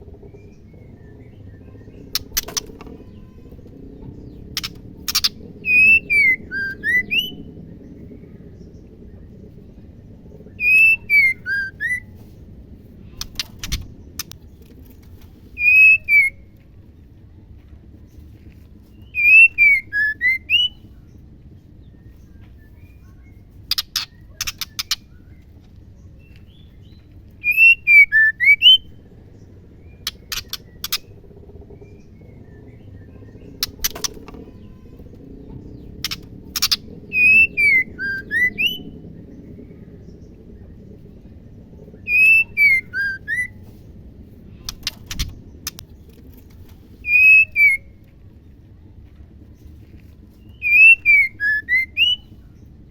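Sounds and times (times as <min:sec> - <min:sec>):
steady low hum: 0:00.0 - 0:52.9
bird whistled calls: 0:04.6 - 0:07.4, 0:10.6 - 0:12.1, 0:15.6 - 0:16.5, 0:19.1 - 0:20.8, 0:27.4 - 0:28.9, 0:36.0 - 0:39.0, 0:42.0 - 0:43.6, 0:47.0 - 0:48.0, 0:50.5 - 0:52.3.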